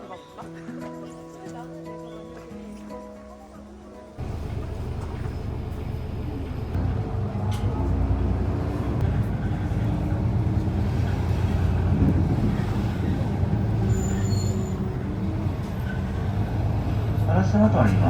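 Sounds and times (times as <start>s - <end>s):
motor vehicle rumbling: 4.2s - 18.0s.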